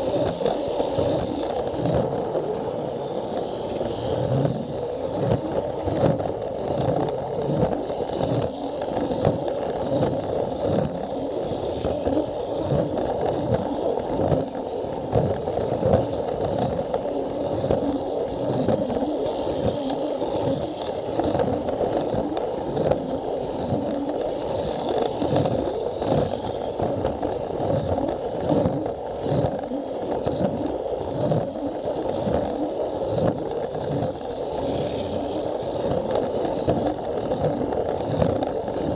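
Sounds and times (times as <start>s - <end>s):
toy train motor whirring: 18.8s - 26.8s.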